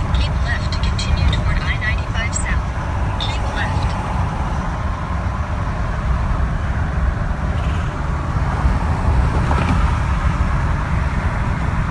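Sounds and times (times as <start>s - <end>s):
diesel engine running: 0.0s - 9.3s.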